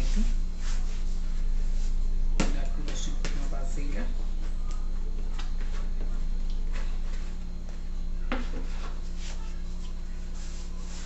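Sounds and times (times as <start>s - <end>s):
low hum: 0.0s - 11.0s
dough rubbing in a bowl: 10.2s - 11.0s.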